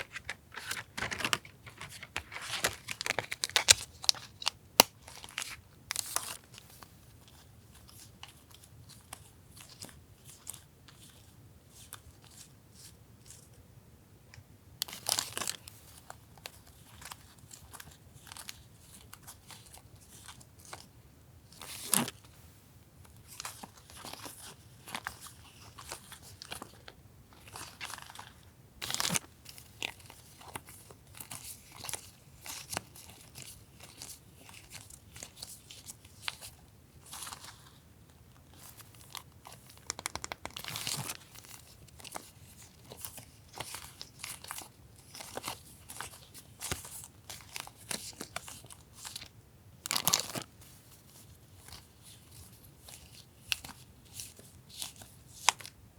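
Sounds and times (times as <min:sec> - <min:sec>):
paper rustling and crinkling: 0:00.0 - 0:06.7.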